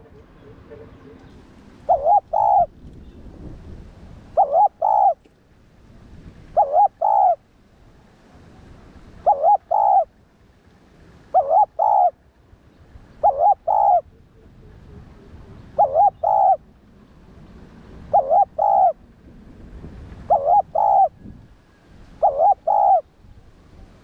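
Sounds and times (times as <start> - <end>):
dove cooing: 0.0 - 2.7, 4.3 - 5.2, 6.6 - 7.4, 9.2 - 10.1, 11.3 - 12.2, 13.2 - 16.7, 18.0 - 19.0, 20.3 - 21.3, 22.2 - 23.1.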